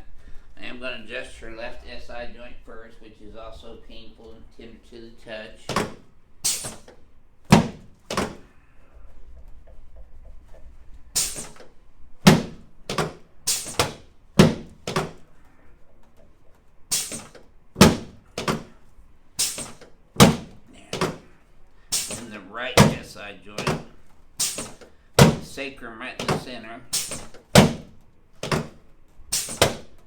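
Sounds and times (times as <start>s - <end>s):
sharp thunks on treatment table: 5.7s - 8.5s, 12.3s - 15.3s, 16.9s - 18.8s, 19.4s - 21.3s, 21.9s - 25.6s, 26.2s - 30.0s.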